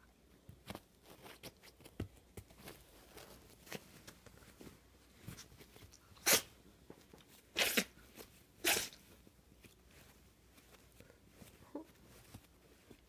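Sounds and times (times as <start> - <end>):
puppy sneezing: 6.2 - 6.6, 7.5 - 8.0, 8.6 - 9.0.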